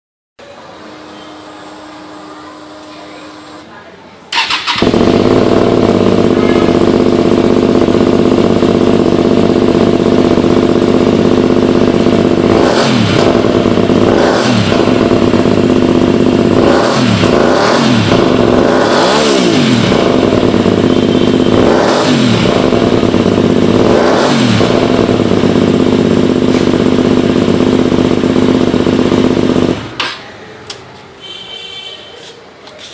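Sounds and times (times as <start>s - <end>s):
motorcycle engine revving: 4.3s - 30.2s.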